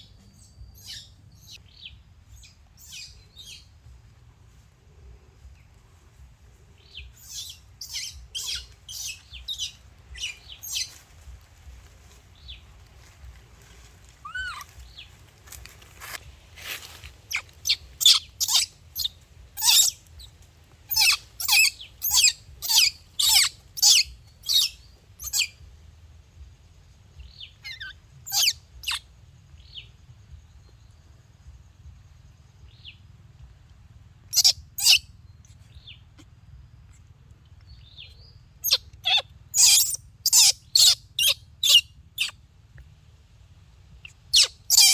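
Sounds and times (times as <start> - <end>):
low steady rumble: 0.0 - 44.8
small animal chirping calls: 7.2 - 11.0, 14.2 - 15.0, 17.3 - 20.3, 20.9 - 25.6, 27.3 - 29.0, 34.3 - 42.4, 44.0 - 44.9.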